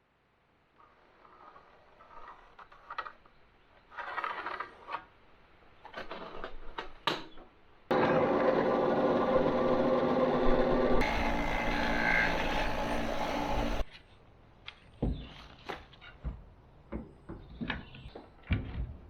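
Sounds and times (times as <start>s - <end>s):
loud mechanical hum: 7.9s - 13.8s.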